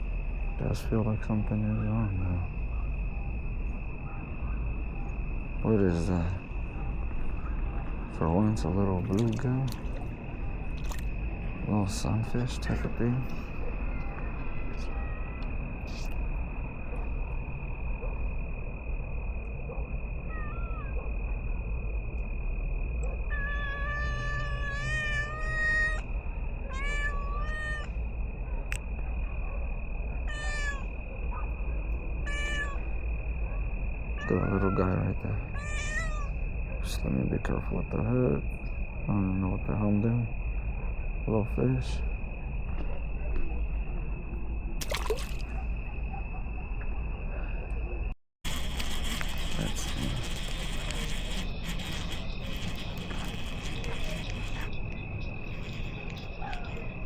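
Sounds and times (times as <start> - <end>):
constant low rumble: 0.0 - 57.0
crickets trilling: 0.0 - 57.0
cat meowing: 13.9 - 15.5, 20.3 - 20.9, 23.3 - 28.0, 30.3 - 30.9, 32.2 - 32.9, 34.2 - 36.4
short burst of noise: 48.5 - 54.7.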